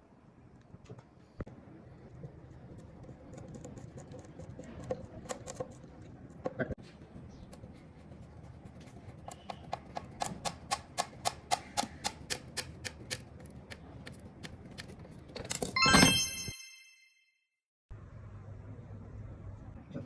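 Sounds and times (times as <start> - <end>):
evenly spaced sharp clicks: 9.2 - 15.0.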